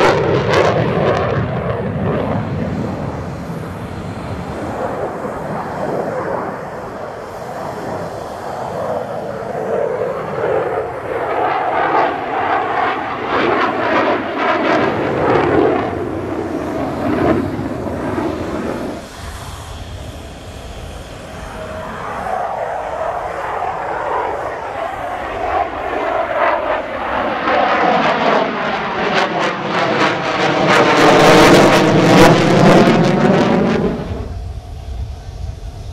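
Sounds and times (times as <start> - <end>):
jet engine in flight: 0.0 - 35.9.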